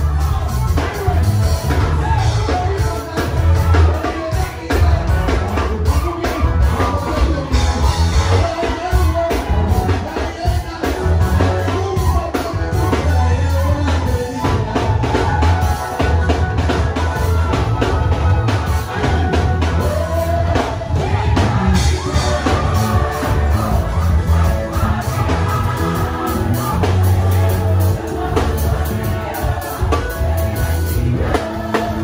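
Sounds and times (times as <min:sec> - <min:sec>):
drum kit: 0:00.0 - 0:32.0
person singing: 0:00.0 - 0:32.0
steady bass line: 0:00.0 - 0:32.0
worship band music: 0:00.0 - 0:32.0.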